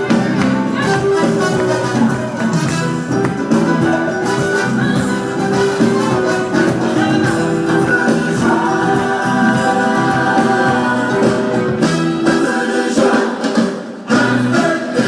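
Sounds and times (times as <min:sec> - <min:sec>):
instrumental accompaniment: 0:00.0 - 0:12.8
choir singing gospel song: 0:03.9 - 0:15.0.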